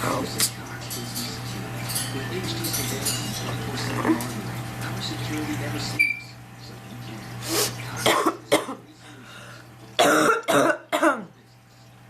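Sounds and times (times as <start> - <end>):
woman coughing: 8.0 - 8.8, 10.0 - 11.3.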